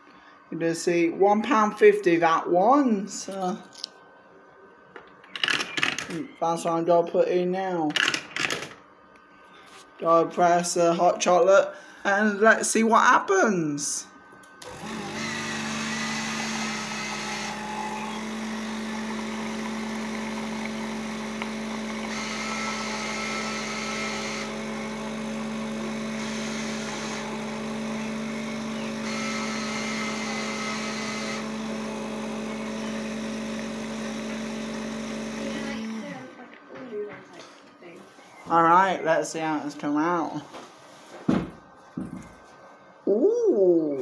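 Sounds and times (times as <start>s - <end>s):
vending machine motor hum: 13.6s - 36.3s.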